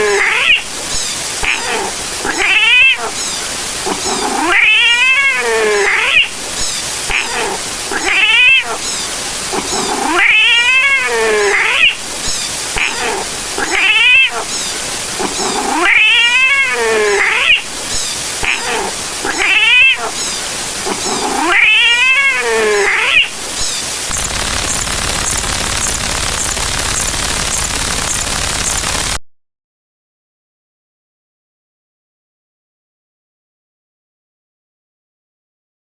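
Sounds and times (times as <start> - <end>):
cat yowling: 0.0 - 0.7, 1.4 - 3.2, 3.9 - 6.4, 7.1 - 8.9, 9.5 - 12.0, 12.8 - 14.6, 15.2 - 17.7, 18.4 - 23.4
steady hiss: 0.0 - 29.2.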